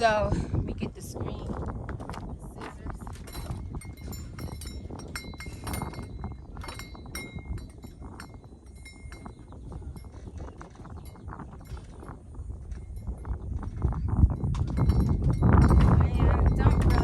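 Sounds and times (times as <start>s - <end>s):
steady low rumble: 0.0s - 17.0s
clicks and metallic clinks: 3.1s - 13.8s.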